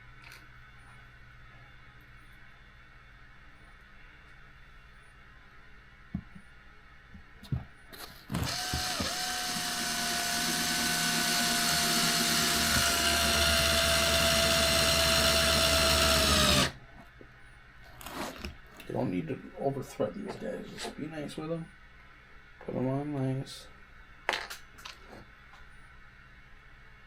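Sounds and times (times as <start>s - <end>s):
electric screwdriver whine: 8.3s - 16.8s.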